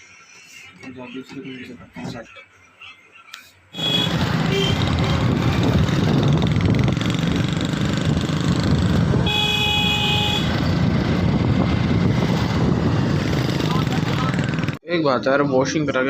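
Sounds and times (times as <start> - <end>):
road traffic noise: 0.0 - 14.8
vehicle horn honking: 3.8 - 5.3, 9.1 - 10.7
motorcycle riding: 3.8 - 14.8.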